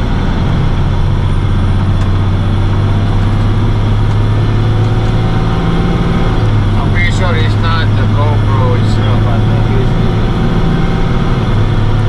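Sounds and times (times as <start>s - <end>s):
road noise: 0.0s - 12.0s
truck engine drone: 0.0s - 12.0s.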